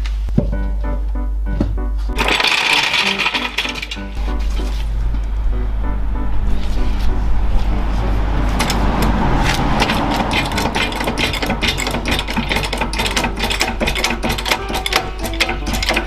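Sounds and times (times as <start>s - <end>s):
rapid mechanical clicking and rattling: 2.2s - 4.3s, 8.6s - 16.0s
steady low hum: 4.1s - 15.7s.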